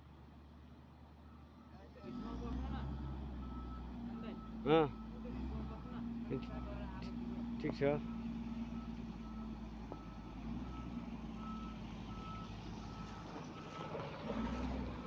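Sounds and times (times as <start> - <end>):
reversing alarm beeps: 8.8 - 13.3.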